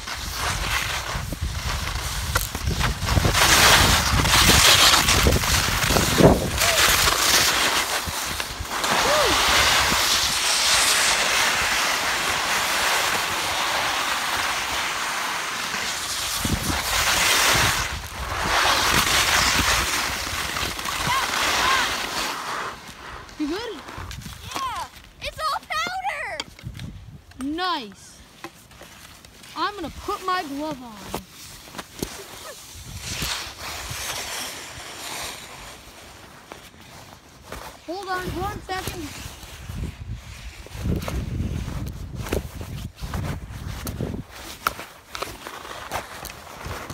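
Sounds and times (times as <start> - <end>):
skis hissing on snow: 0.0 - 26.2, 28.4 - 46.9
wind buffeting microphone: 1.1 - 7.0.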